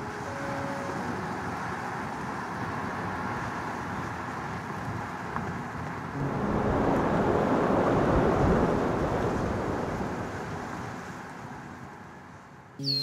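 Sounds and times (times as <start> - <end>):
flowing water rushing: 6.1 - 11.7.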